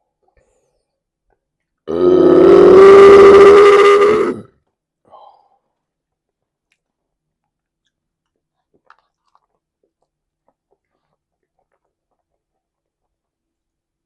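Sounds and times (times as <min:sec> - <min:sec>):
person chewing food: 0:07.8 - 0:12.6.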